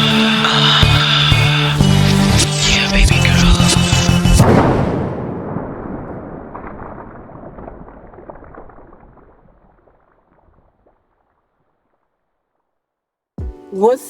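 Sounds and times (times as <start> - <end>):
crackling pops: 0.0 - 12.8
explosion-like rumble: 1.7 - 11.0.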